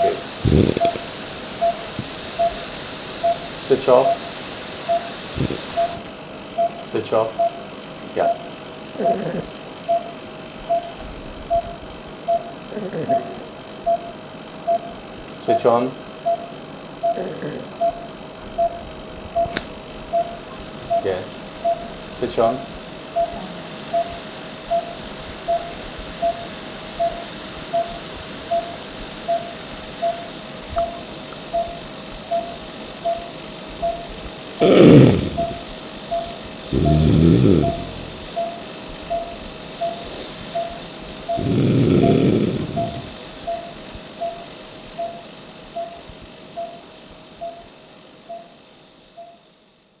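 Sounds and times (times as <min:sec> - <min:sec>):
hiss of air from machine: 0:00.0 - 0:06.2, 0:19.4 - 0:49.4
faint high whine: 0:00.0 - 0:08.5, 0:17.8 - 0:50.0
patient monitor beeping: 0:00.0 - 0:48.6.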